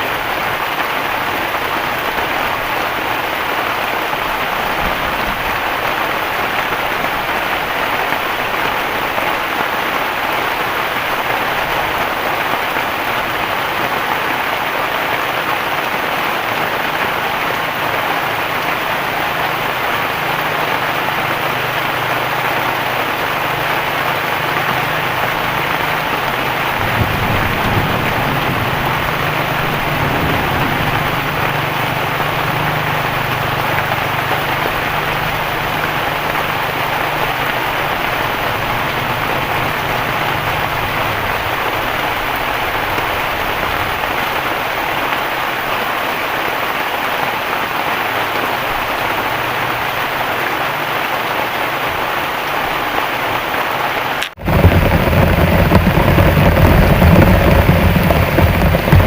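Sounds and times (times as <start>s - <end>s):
heavy rain: 0.0s - 59.0s
low rumble: 25.7s - 33.1s, 54.4s - 59.0s.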